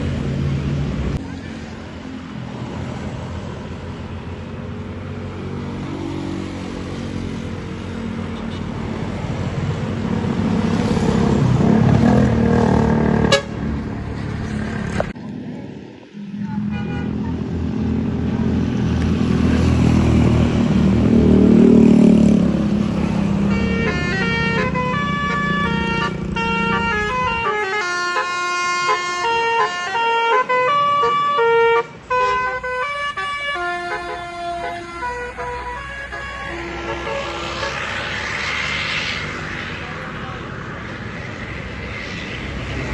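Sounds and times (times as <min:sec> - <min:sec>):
multi-tone bus horn melody: 0:13.2 - 0:13.7, 0:16.3 - 0:17.2, 0:23.4 - 0:37.9.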